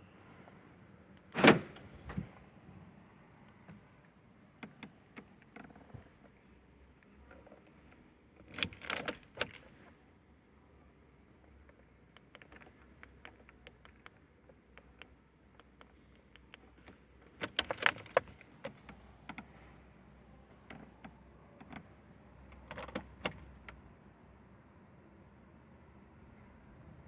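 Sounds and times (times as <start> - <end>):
key clicking in ignition: 7.0 - 9.8, 11.4 - 19.5, 22.5 - 23.8
car keys jangling: 7.3 - 9.8, 11.5 - 18.9, 22.5 - 23.8.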